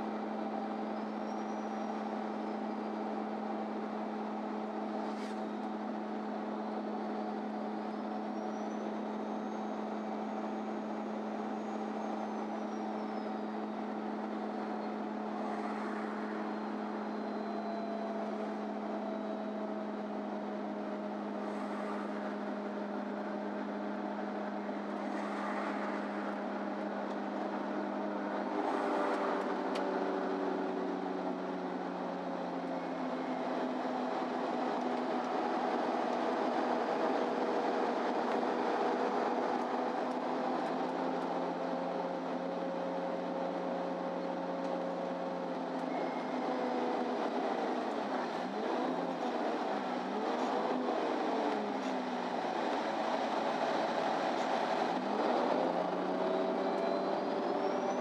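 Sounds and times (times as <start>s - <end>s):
bus engine humming and whining: 0.0s - 58.0s.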